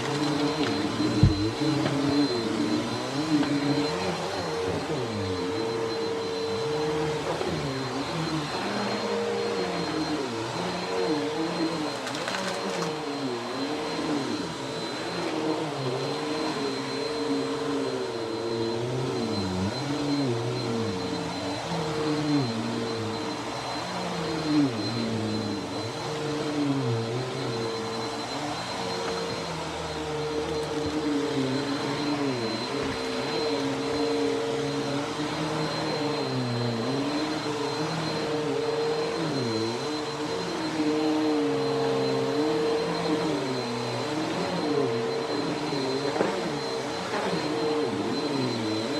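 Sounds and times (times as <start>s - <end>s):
vacuum cleaner motor hum: 0.0s - 48.9s.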